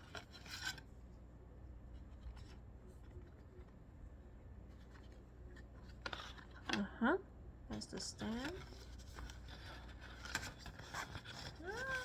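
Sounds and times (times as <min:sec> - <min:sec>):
paper and card rustling: 0:00.0 - 0:01.0, 0:04.6 - 0:06.9, 0:07.7 - 0:12.0.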